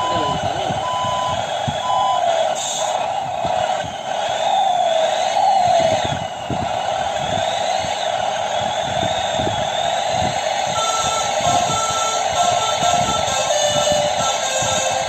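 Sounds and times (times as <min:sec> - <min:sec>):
horn playing wavering melody: 0:10.7 - 0:15.0.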